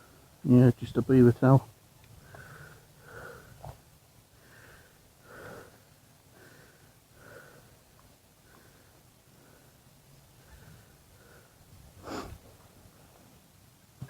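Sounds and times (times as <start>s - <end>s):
man breathing heavily: 2.2s - 7.8s.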